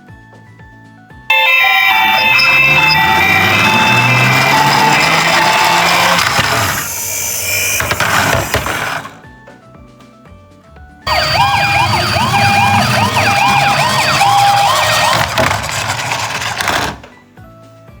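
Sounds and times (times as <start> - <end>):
toy electronic siren wailing: 1.3 - 9.2, 11.1 - 17.0.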